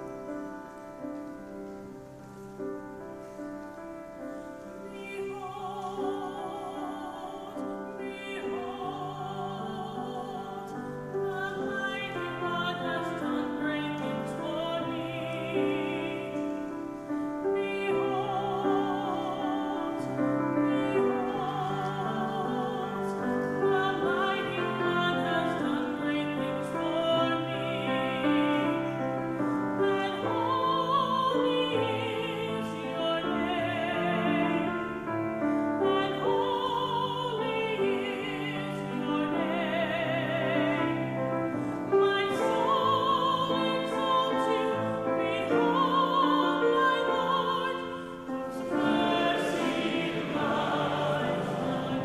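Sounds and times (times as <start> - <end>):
piano accompaniment: 0.0 - 52.0
person singing with vibrato: 4.8 - 16.7, 41.9 - 52.0.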